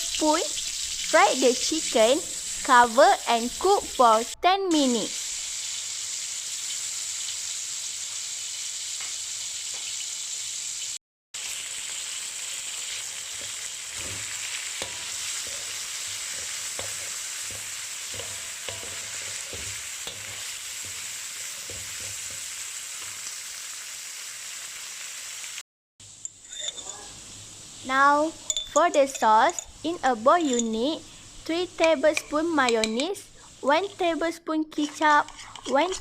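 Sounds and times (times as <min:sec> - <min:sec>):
utensil stirring pan: 0:00.0 - 0:04.1, 0:11.4 - 0:23.6, 0:26.2 - 0:33.5, 0:34.8 - 0:36.0
chicken sizzling in frying pan: 0:00.0 - 0:26.4.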